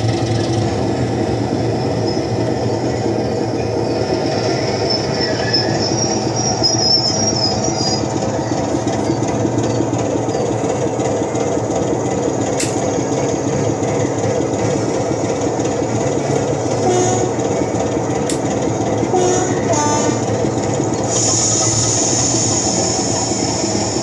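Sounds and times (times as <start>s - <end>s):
train wheels squealing: 0.0s - 11.6s, 19.2s - 24.0s
train rumble: 0.0s - 24.0s
sharp click: 12.6s - 12.9s, 18.2s - 18.5s.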